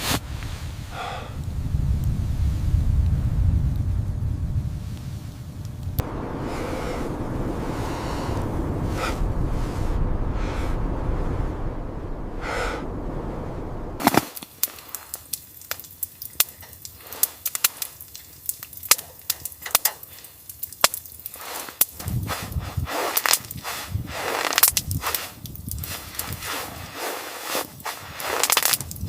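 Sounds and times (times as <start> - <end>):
wind rumbling: 0.2 - 14.2, 22.0 - 27.0
firewood crackling and popping: 0.3 - 29.0.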